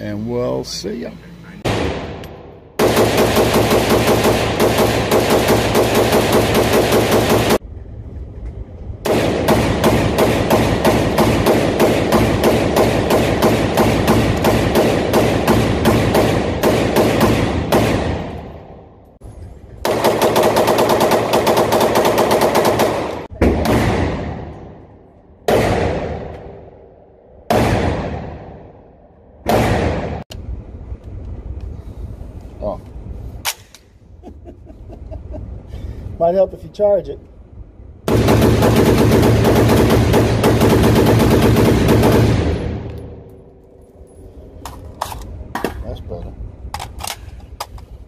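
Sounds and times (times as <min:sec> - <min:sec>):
automatic gunfire bursts: 0:02.8 - 0:07.6, 0:09.1 - 0:18.3, 0:19.8 - 0:24.2, 0:38.1 - 0:42.8.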